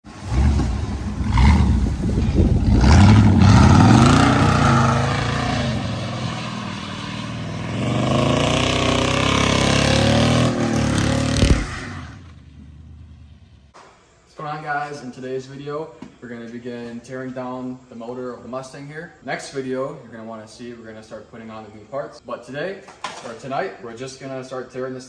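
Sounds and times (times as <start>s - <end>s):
car engine revving: 0.0s - 13.7s.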